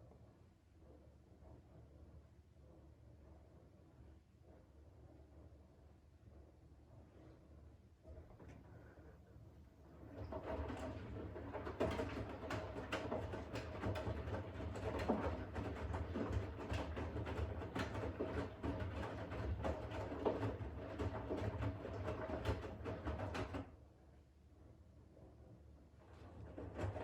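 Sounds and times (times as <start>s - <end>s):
washing machine motor hum: 9.8s - 23.8s, 25.9s - 27.0s.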